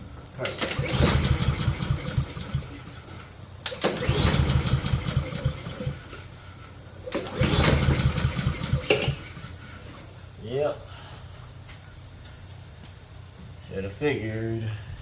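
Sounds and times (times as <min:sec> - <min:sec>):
lawn mower engine pull-start chugging: 0:00.4 - 0:06.2, 0:07.0 - 0:09.7.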